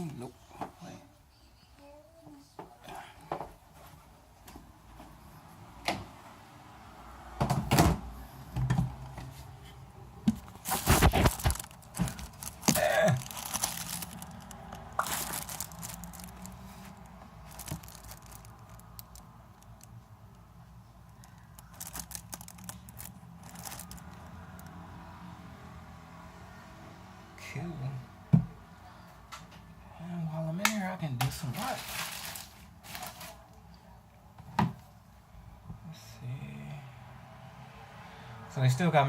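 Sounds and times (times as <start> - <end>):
handling knocks and thumps: 10.2 - 14.0.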